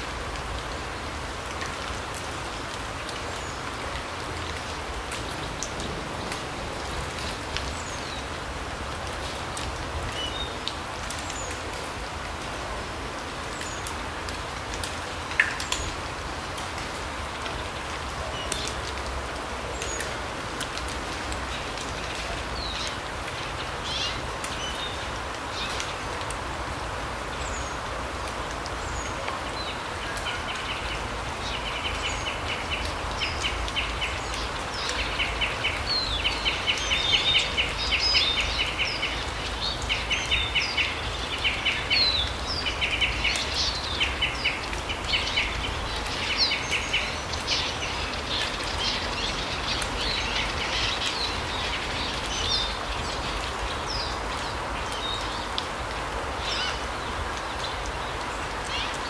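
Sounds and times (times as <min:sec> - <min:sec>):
small birds trilling and chirping: 0:28.7 - 0:59.0.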